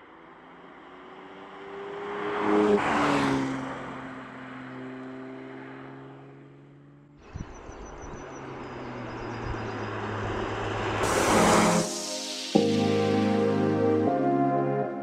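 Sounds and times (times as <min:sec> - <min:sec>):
different engine sound: 0:07.2 - 0:14.0.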